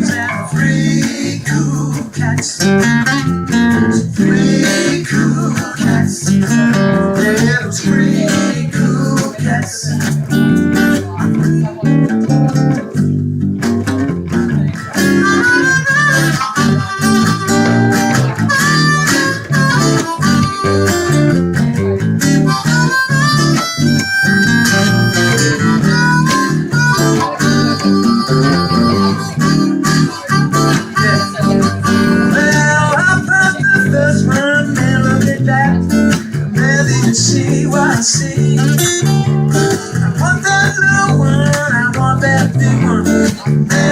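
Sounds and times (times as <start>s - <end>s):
bass line: 0.0s - 43.9s
strummed acoustic guitar: 0.0s - 43.9s
harmonica solo: 14.9s - 21.4s, 22.2s - 33.0s.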